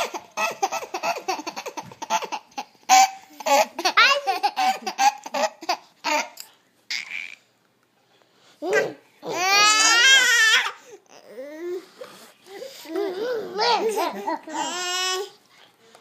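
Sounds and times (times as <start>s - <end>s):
baby giggling: 0.0s - 7.4s
baby voice: 8.6s - 11.9s, 12.5s - 15.4s.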